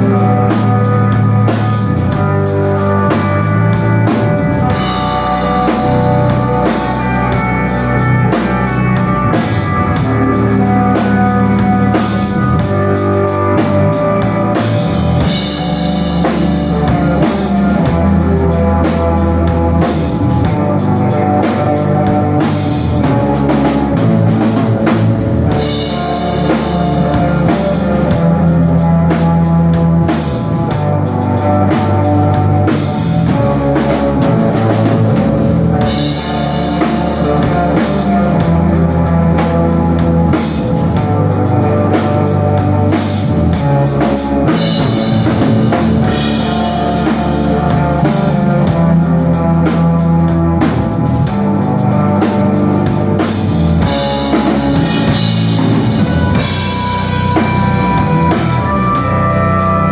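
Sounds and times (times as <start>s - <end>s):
cymbals: 0.0s - 59.9s
drum kit beating: 0.0s - 59.9s
electric guitar: 0.0s - 59.9s
low bass notes: 0.0s - 59.9s.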